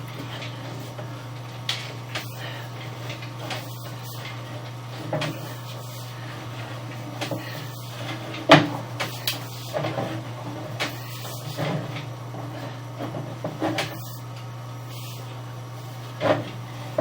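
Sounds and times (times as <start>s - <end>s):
low equipment hum: 0.0s - 17.0s
cable knocks and clunks: 6.9s - 11.0s.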